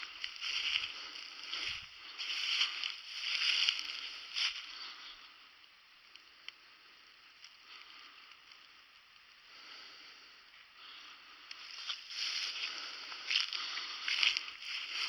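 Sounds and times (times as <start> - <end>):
footsteps through dry leaves: 0.0 - 4.9, 11.7 - 15.0.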